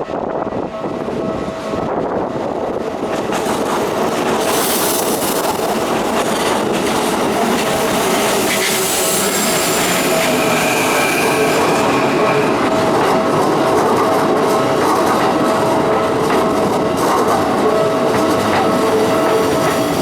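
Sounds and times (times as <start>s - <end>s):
electric train passing: 0.0s - 20.0s
wheel squeal: 7.8s - 12.9s
wheels clicking over rail joints: 12.2s - 20.0s.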